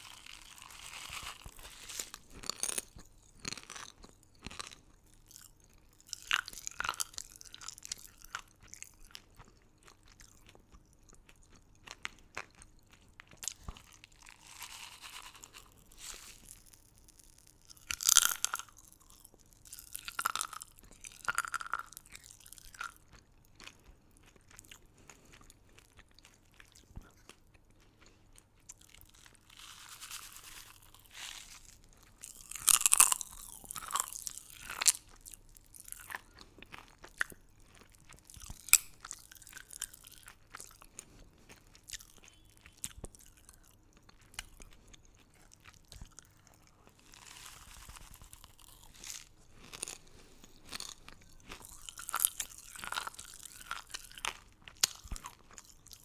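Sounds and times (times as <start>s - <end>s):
crunching hard candy: 0.0s - 56.0s.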